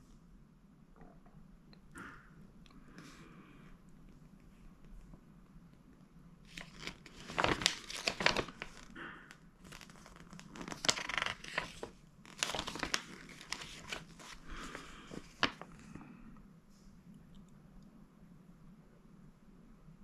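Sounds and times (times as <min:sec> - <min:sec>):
packaging crinkling and rustling: 0:06.5 - 0:09.0, 0:09.6 - 0:15.8.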